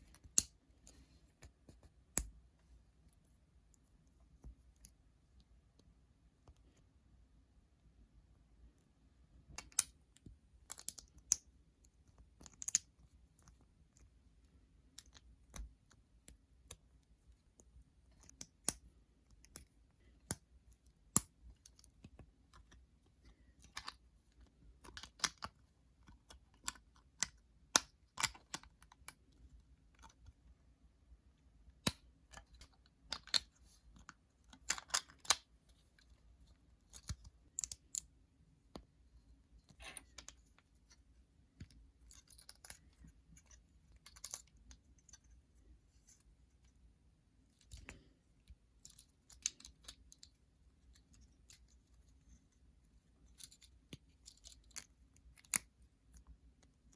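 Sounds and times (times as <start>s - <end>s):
plastic pieces clicking together: 12.4s - 12.9s, 34.5s - 35.4s.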